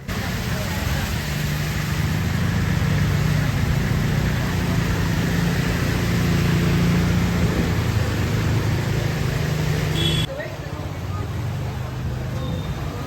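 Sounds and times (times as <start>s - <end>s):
vehicle engine drone: 0.0s - 10.3s.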